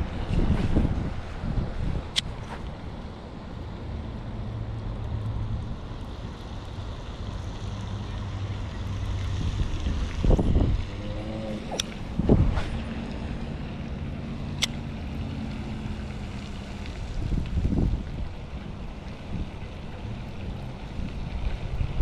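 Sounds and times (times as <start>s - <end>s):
wind buffeting microphone: 0.0s - 2.9s, 9.2s - 14.0s, 15.8s - 22.0s
steady low rumble: 0.0s - 22.0s.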